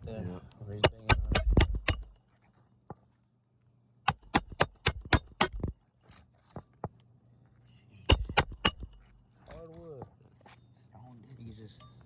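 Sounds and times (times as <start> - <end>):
hammer striking nail: 0.8 - 2.2, 4.1 - 5.7, 8.1 - 9.1.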